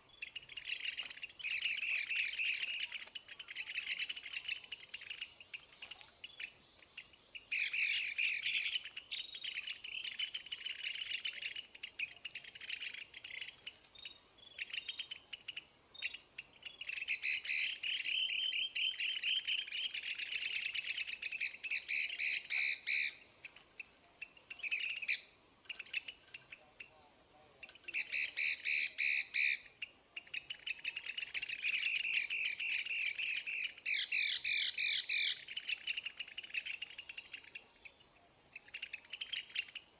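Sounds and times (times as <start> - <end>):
bird singing varied phrases: 27.8 - 38.0.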